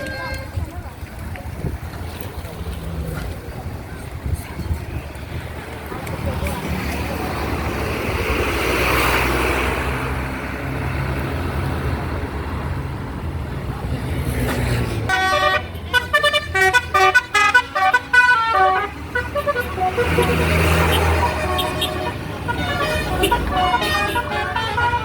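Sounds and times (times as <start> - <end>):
multi-tone bus horn tune: 0.0 - 0.6, 15.1 - 25.0.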